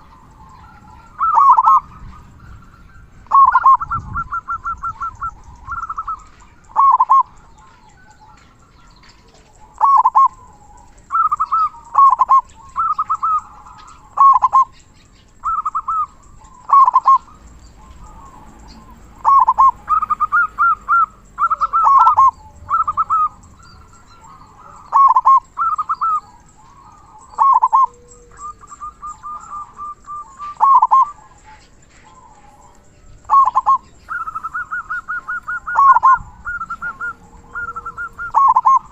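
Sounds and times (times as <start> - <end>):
dove cooing: 0.0 - 38.9.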